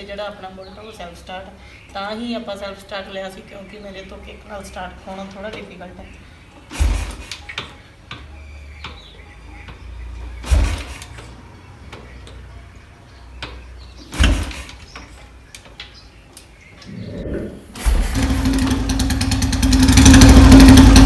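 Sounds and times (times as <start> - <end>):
motorcycle engine kick-start rumble: 6.7 - 7.6, 10.4 - 11.4, 17.8 - 21.0.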